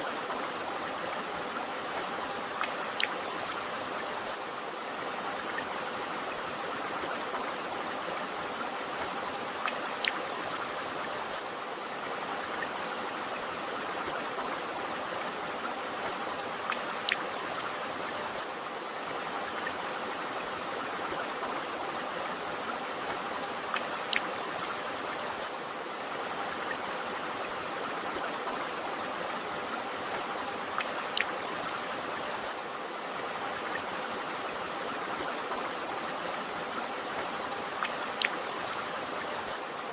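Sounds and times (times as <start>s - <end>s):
stream water flowing: 0.0s - 39.9s
sharp drip-like ticks: 2.0s - 4.4s, 9.2s - 11.5s, 16.0s - 18.5s, 23.1s - 25.6s, 30.1s - 32.6s, 37.2s - 39.6s.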